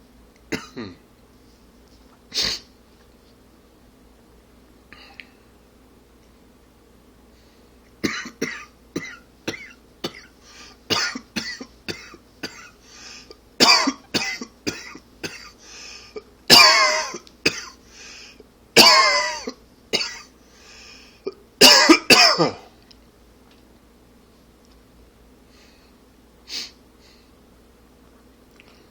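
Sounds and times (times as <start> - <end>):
man coughing: 0.5 - 1.0, 8.0 - 10.3, 10.9 - 12.8, 13.6 - 17.8, 18.8 - 20.3, 21.2 - 22.7.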